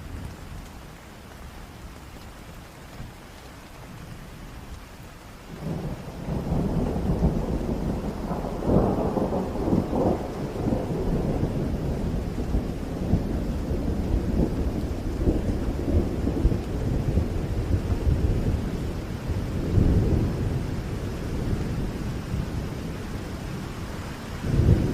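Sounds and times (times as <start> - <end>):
steady rain: 0.0 - 24.9
thunder rolling: 5.6 - 18.6.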